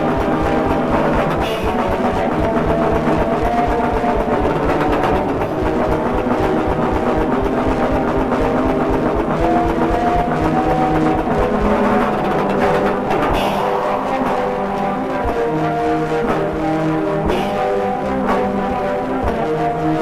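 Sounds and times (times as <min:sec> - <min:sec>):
fast dense drumming: 0:00.0 - 0:13.7
black metal music: 0:00.0 - 0:20.0
droning held notes: 0:00.0 - 0:20.0.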